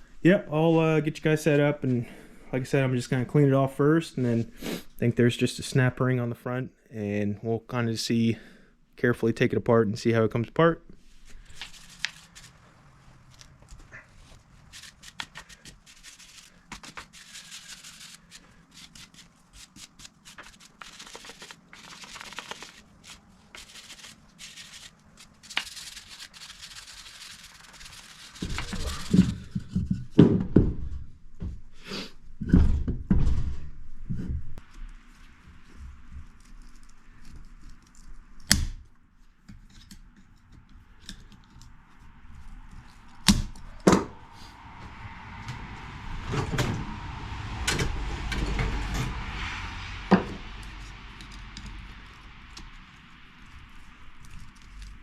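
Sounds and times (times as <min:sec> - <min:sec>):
wire brush scrubbing metal: 0:14.6 - 0:29.2
heavy thuds and knocks: 0:32.4 - 0:34.5.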